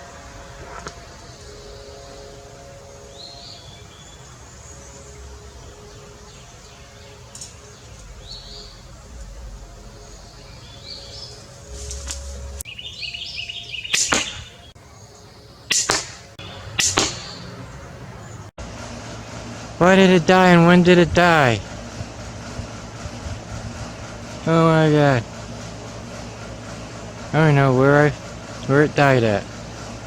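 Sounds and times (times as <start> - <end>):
small birds chirping: 0.9 - 18.5
crossbow snap: 15.7 - 16.2, 16.8 - 17.3.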